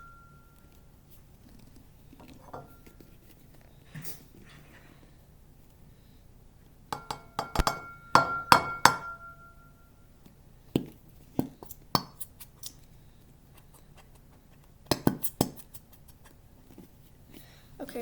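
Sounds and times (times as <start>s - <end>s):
clinks and knocks against bowl: 2.2s - 3.0s, 6.9s - 9.7s.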